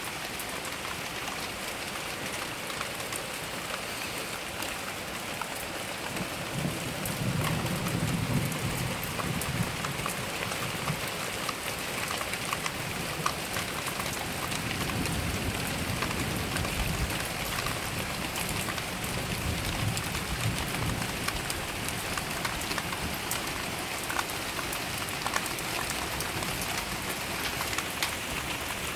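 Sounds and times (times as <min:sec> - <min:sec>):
heavy rain pattering: 0:00.0 - 0:28.9
thunder rumble: 0:06.5 - 0:11.1.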